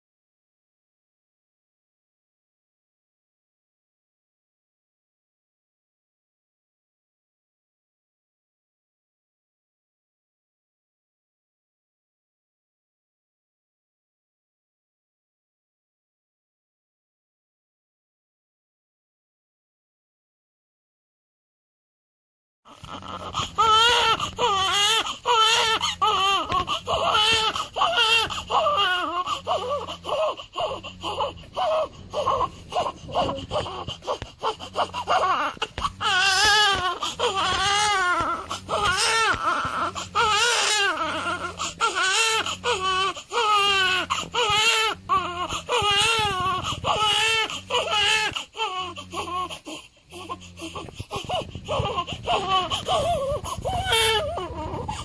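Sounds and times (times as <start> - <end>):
baby crying: 22.7 - 55.0.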